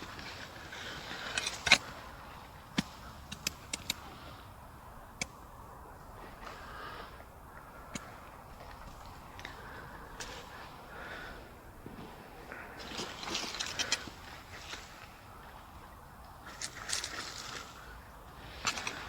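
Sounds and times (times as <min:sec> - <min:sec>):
knocks and clicks of digging soil: 0:00.0 - 0:02.0, 0:02.7 - 0:04.0.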